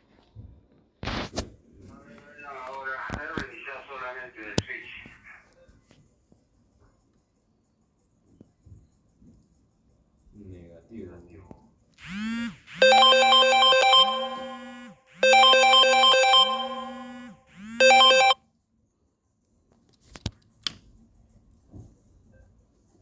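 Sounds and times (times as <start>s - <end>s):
electronic siren: 12.0s - 18.4s
fast high-pitched beeps: 12.0s - 18.4s.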